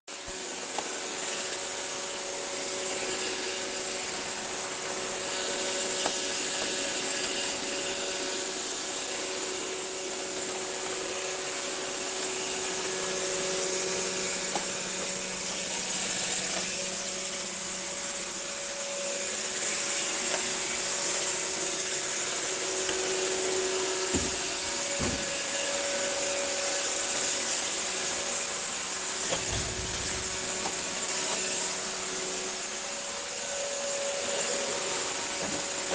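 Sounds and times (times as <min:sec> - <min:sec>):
rushing hiss of airflow: 0:27.7 - 0:35.8.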